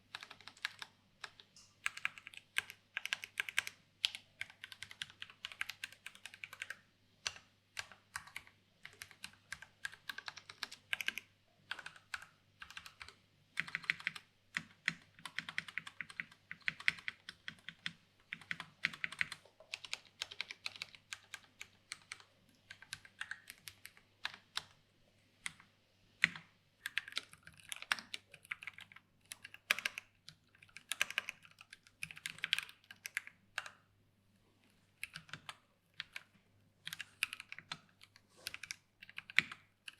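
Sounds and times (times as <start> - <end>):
mechanical keyboard typing: 0.1 - 24.8, 26.2 - 33.8, 35.0 - 39.9.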